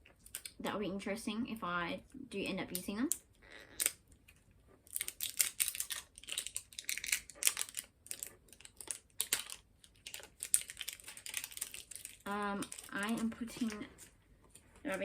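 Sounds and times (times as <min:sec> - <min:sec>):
packaging crinkling: 0:03.5 - 0:15.0.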